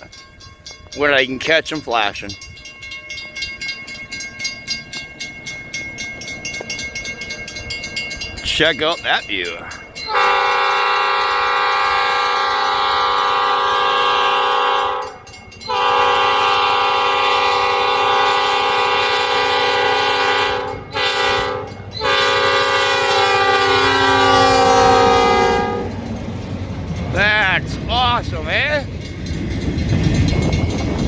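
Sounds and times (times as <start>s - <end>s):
passing train rumble: 0.0s - 31.0s
locomotive air horn blasts: 10.1s - 26.1s.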